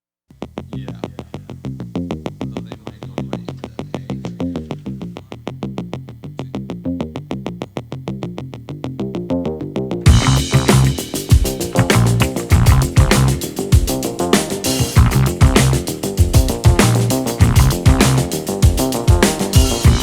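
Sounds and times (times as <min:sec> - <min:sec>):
drums: 0:00.3 - 0:05.7, 0:10.0 - 0:20.0
synthesizer music: 0:10.1 - 0:20.0.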